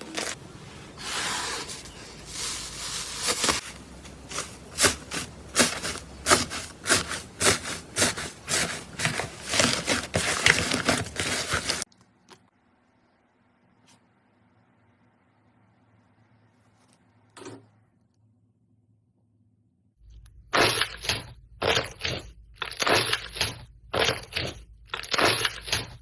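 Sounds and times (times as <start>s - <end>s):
crackly rustle: 0.0s - 12.1s.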